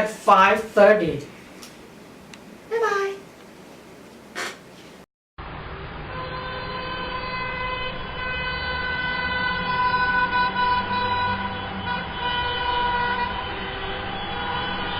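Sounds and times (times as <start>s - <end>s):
vehicle warning tone: 5.8s - 14.9s.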